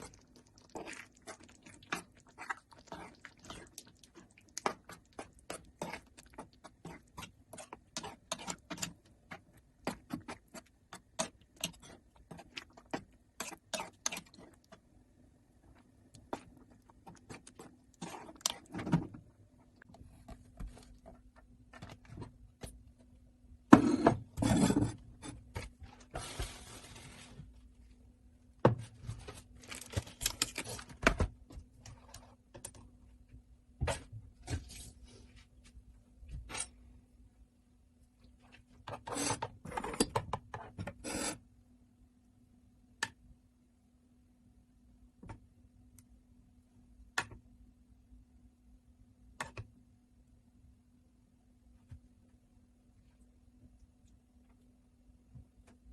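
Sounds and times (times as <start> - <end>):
faint steady hum: 0.0 - 55.9.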